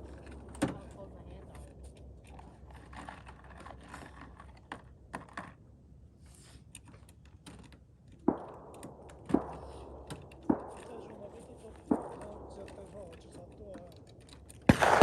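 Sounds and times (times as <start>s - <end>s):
faint clicks and knocks: 6.6s - 14.7s
rifle shots with echo: 8.2s - 14.0s, 14.6s - 15.0s.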